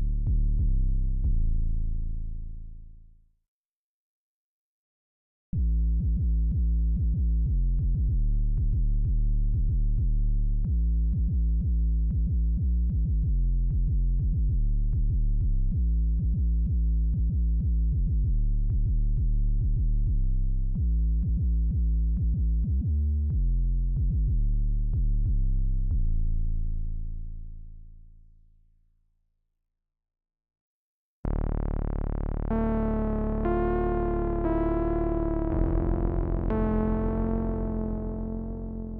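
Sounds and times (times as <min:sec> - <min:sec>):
synthesizer bass notes bending down: 0:31.3 - 0:38.9.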